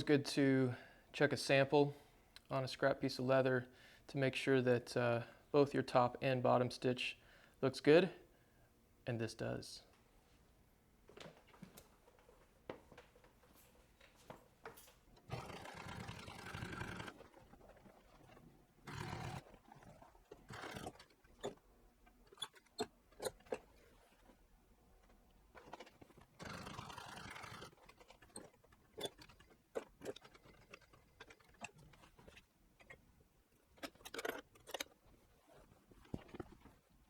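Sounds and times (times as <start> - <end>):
tools and leather clicking: 14.6 - 24.4, 25.0 - 36.8.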